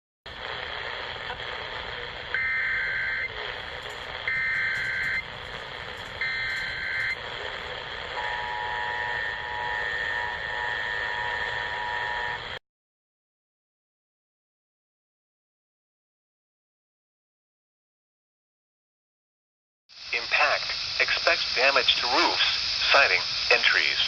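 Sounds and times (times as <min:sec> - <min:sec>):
two-tone attention signal: 0:02.4 - 0:03.4, 0:04.2 - 0:05.3, 0:06.2 - 0:07.2, 0:08.2 - 0:12.4
digital data tone bursts: 0:02.4 - 0:05.4, 0:06.1 - 0:07.2
steady hiss: 0:20.0 - 0:24.0.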